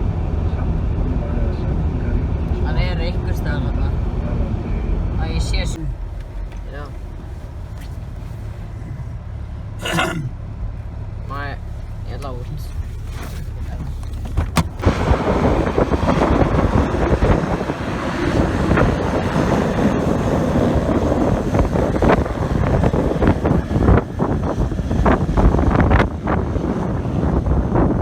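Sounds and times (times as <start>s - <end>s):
wind buffeting microphone: 11.8s - 28.0s.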